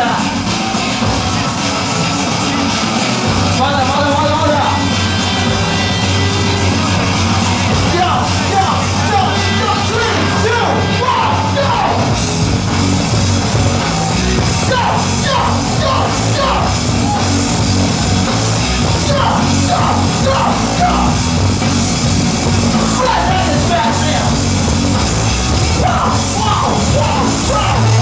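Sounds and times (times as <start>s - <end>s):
loud music with low beat: 0.0s - 28.0s
shouted vocal lines: 3.4s - 12.2s, 13.9s - 17.6s, 18.6s - 21.6s, 22.7s - 24.6s, 25.3s - 28.0s.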